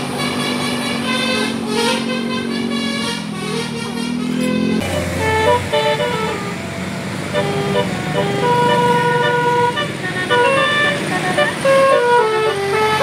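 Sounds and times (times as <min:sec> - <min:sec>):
bus musical horn tune: 0:00.0 - 0:13.0.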